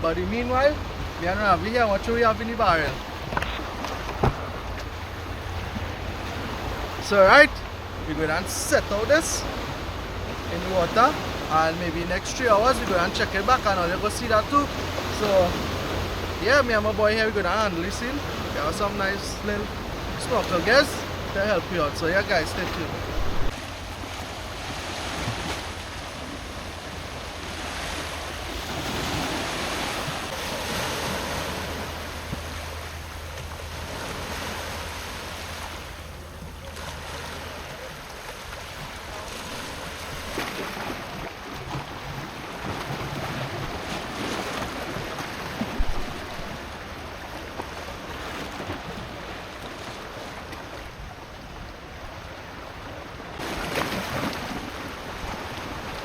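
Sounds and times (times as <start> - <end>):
sea waves washing against jetty: 0.0 - 56.0
wind buffeting microphone: 19.4 - 34.6.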